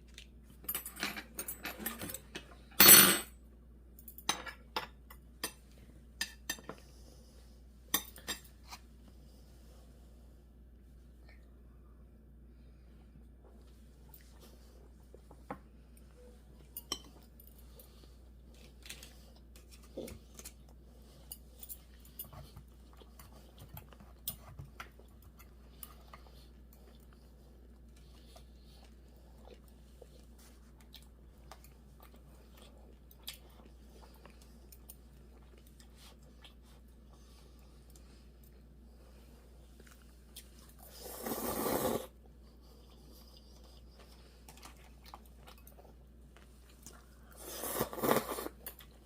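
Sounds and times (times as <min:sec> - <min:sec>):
person chewing food: 0:16.7 - 0:49.0.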